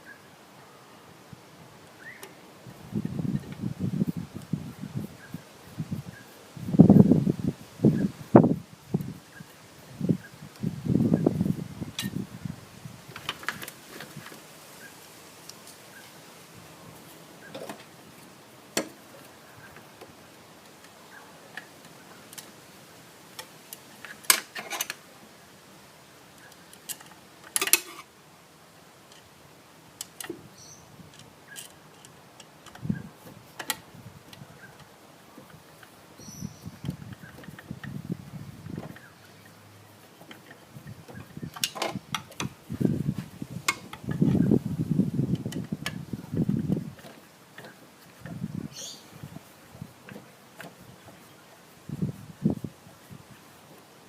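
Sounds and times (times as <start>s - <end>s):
metal clicks of hand tools: 23.3s - 25.0s, 26.4s - 28.1s, 41.5s - 42.6s
low rumbling handling noise: 30.0s - 54.0s.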